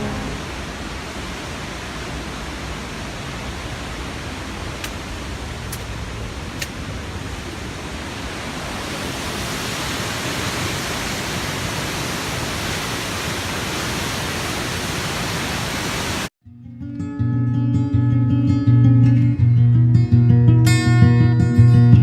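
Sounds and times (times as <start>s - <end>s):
waterfall rushing: 0.0s - 16.3s.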